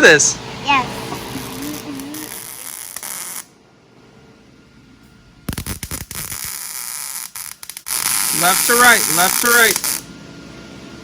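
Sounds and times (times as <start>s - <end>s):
welding arc crackling and buzzing: 1.0s - 3.6s, 5.5s - 10.1s.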